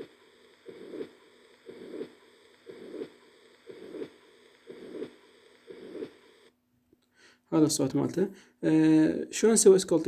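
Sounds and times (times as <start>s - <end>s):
heartbeat with blowing murmur: 0.0s - 6.4s.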